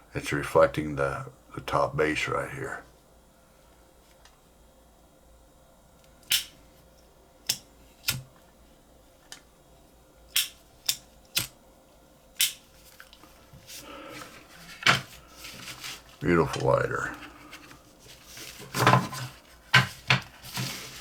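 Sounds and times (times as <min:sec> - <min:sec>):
lighter clicks: 0:06.2 - 0:06.6, 0:10.3 - 0:11.5, 0:12.4 - 0:12.6.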